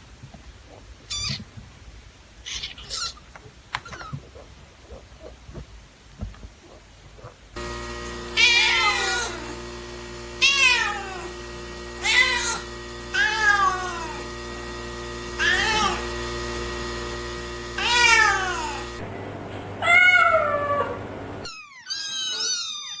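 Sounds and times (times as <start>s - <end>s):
background hum: 0.0s - 21.5s
kittens meowing: 1.1s - 1.4s, 19.8s - 23.0s.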